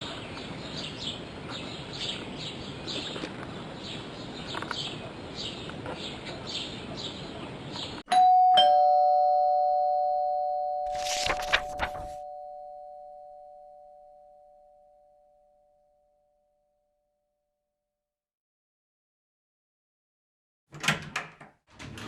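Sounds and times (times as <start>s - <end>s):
birds chirping: 0.0s - 8.0s
two-note doorbell chime: 8.1s - 16.0s.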